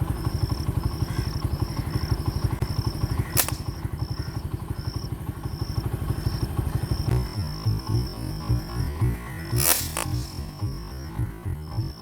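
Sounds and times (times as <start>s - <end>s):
insects chirping: 0.0s - 12.0s
small engine running: 0.0s - 12.0s
sharp crack: 3.2s - 4.1s, 7.1s - 12.0s.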